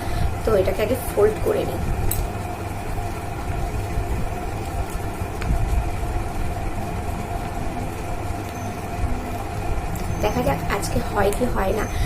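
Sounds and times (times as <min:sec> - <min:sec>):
motor humming with low rumble: 0:00.0 - 0:12.0.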